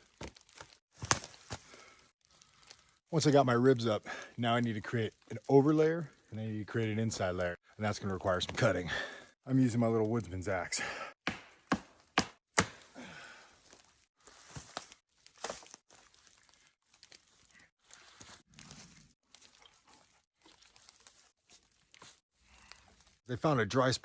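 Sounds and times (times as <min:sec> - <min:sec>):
branches rustling and crackling: 0:00.0 - 0:08.7, 0:11.4 - 0:24.0
axe chopping wood: 0:11.2 - 0:12.9.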